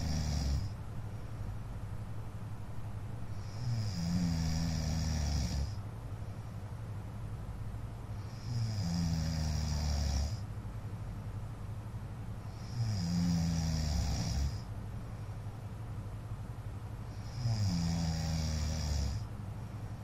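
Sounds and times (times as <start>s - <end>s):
man snoring: 0.0s - 0.8s, 3.4s - 5.8s, 8.2s - 10.4s, 12.5s - 14.7s, 17.1s - 19.3s.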